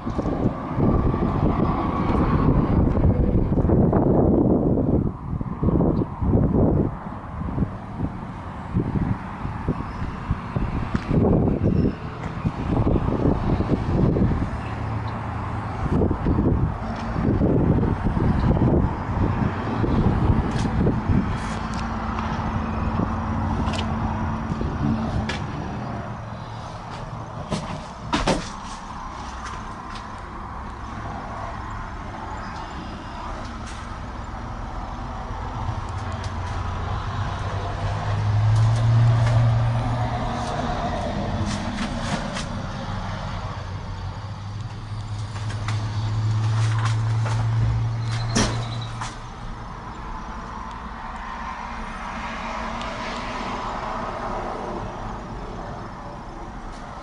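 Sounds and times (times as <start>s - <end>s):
diesel engine running: 0.0s - 52.2s
broad rushing noise: 0.0s - 57.0s.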